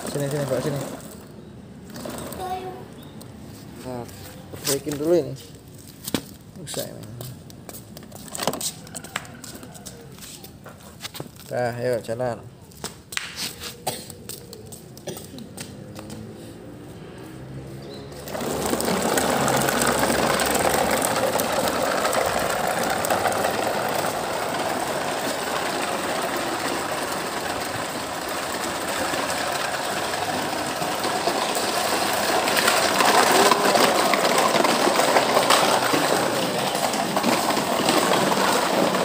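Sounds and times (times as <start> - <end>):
toy truck wheels rattling: 0.0 - 3.1, 18.1 - 39.0.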